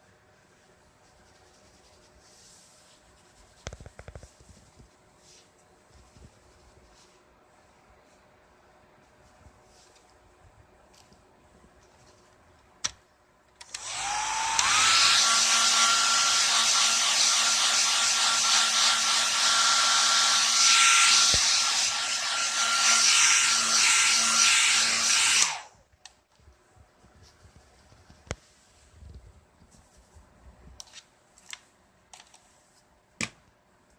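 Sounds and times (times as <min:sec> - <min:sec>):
hair dryer blowing: 0:13.6 - 0:25.8.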